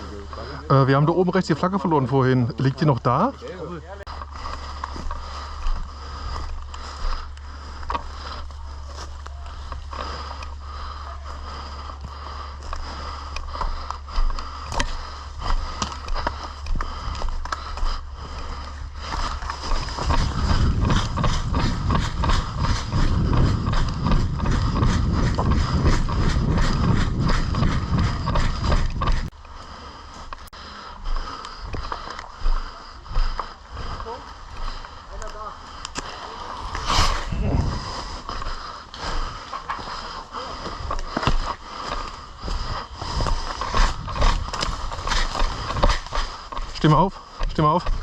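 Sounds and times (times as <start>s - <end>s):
footsteps: 4.0s - 48.0s
clothing and gear rustling: 4.1s - 29.4s, 30.0s - 48.0s
sharp clicks: 34.6s - 36.1s.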